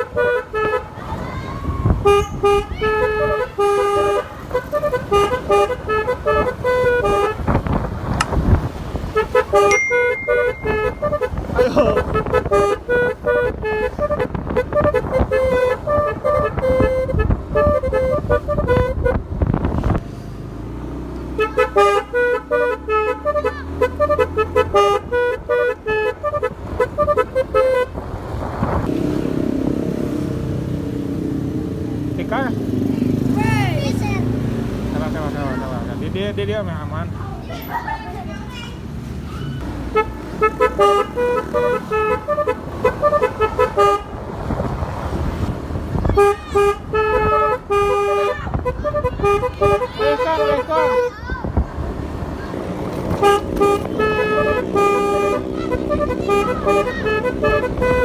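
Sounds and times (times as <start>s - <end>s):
melodic vehicle horn: 0.0s - 1.2s, 2.0s - 19.6s, 21.3s - 28.0s, 39.6s - 44.2s, 46.1s - 51.2s, 53.0s - 58.0s
vehicle engine running: 1.8s - 37.3s, 38.3s - 58.0s.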